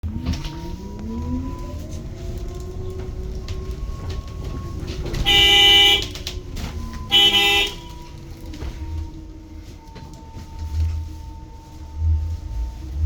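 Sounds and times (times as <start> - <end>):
electric bus motor whining: 0.0 - 13.0
bus horn blasts: 5.2 - 6.4, 7.0 - 8.2.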